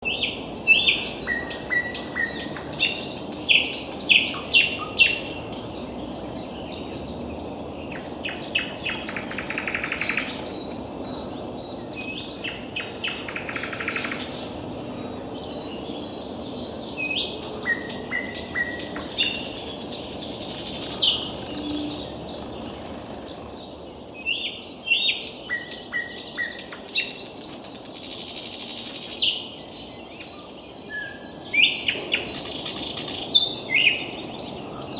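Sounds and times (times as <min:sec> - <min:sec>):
bird singing varied phrases: 0:00.0 - 0:27.4
low rush of wind: 0:00.0 - 0:34.9.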